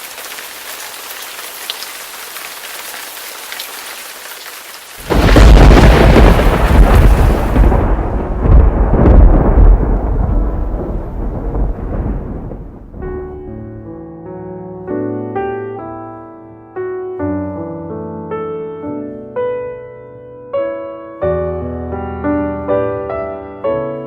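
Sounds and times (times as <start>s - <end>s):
steady rain: 0.0s - 13.5s
thunder crack and rumble: 5.0s - 13.8s.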